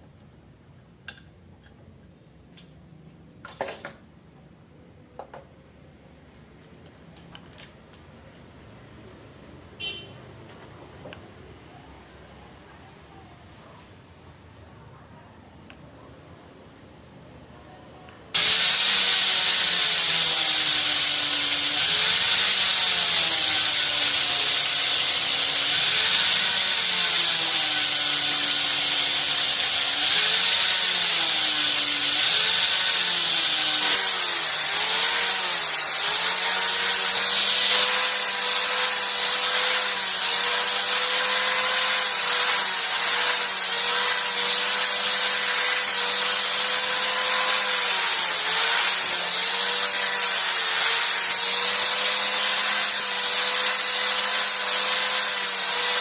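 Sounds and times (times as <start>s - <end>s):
electric power tool running: 18.4s - 56.0s.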